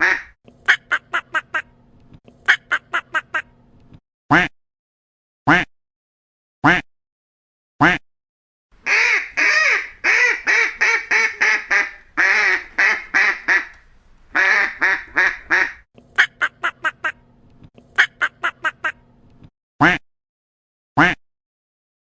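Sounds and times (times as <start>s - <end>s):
duck quacking: 0.0s - 0.3s, 8.8s - 15.8s.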